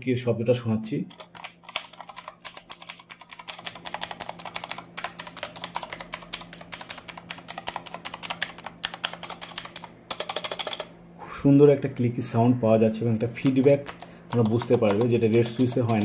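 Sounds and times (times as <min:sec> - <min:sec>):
mechanical keyboard typing clicks: 0:01.1 - 0:10.9, 0:13.4 - 0:16.0.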